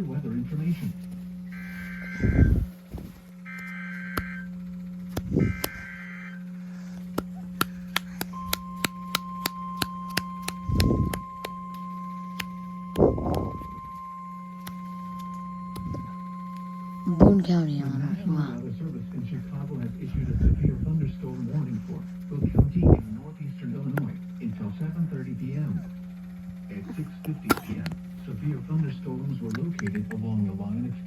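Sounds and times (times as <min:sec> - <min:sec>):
low hum: 0:00.0 - 0:31.0
sharp clicks: 0:05.1 - 0:05.9, 0:07.2 - 0:11.8
warbling data tones: 0:12.7 - 0:14.6.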